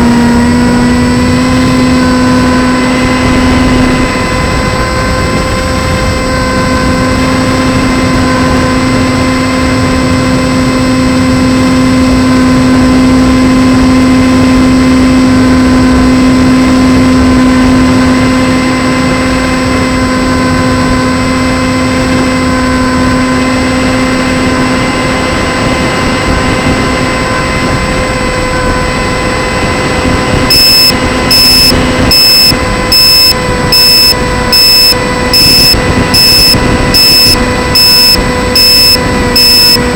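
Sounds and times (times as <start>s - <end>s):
model plane motor and propeller: 0.0s - 39.9s
high electronic beep: 30.5s - 39.9s.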